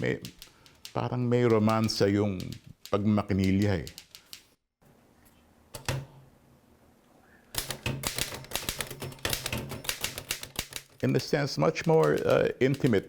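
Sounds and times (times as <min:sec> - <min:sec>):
typewriter key strikes: 0:07.6 - 0:13.0.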